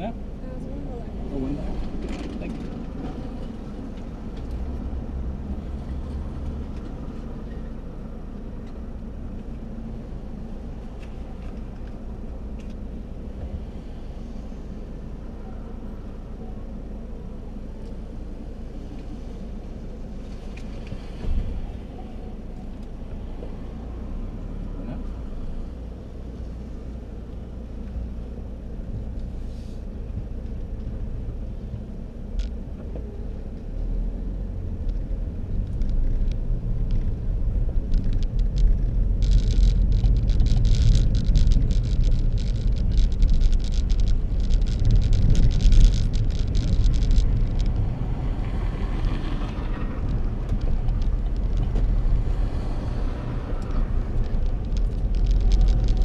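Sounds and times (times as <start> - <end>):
car engine and road rumble: 0.0 - 56.0
crackling noise: 32.2 - 56.0.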